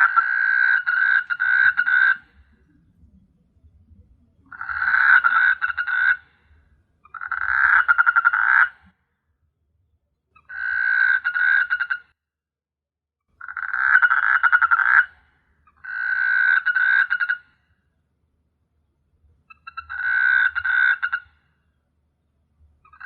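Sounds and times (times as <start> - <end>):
frog croaking: 0.0 - 2.7, 4.4 - 6.4, 7.0 - 9.0, 10.4 - 12.1, 13.4 - 17.6, 19.5 - 21.4.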